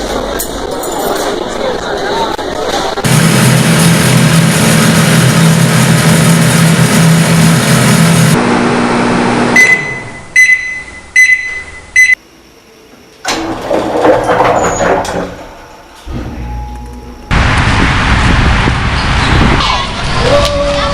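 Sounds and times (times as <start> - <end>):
loud machine noise with low hum: 2.9 - 10.4, 13.2 - 20.4
short high electronic beeps: 9.6 - 12.2.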